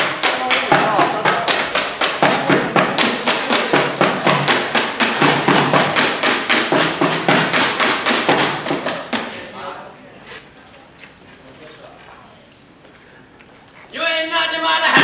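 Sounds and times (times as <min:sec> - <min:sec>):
rhythmic knocks on objects: 0:00.0 - 0:09.5.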